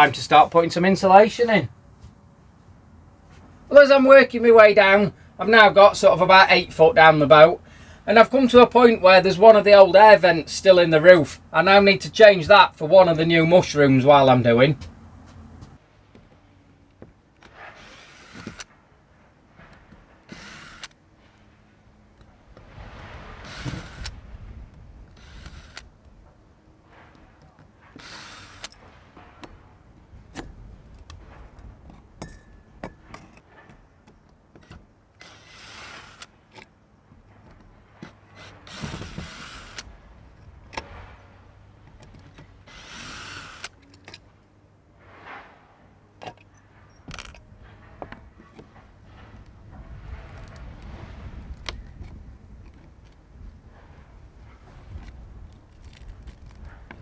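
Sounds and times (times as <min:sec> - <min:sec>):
tool scrapes and rustles: 0:00.0 - 0:15.8, 0:17.4 - 0:18.8, 0:19.6 - 0:20.9, 0:22.6 - 0:24.2, 0:25.1 - 0:26.0, 0:26.8 - 0:57.0.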